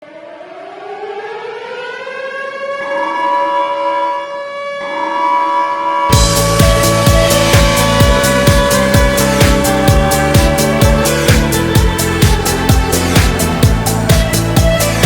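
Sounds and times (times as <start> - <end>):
arena goal horn: 3.2 - 15.0
music with heavy drum beat: 6.1 - 15.0.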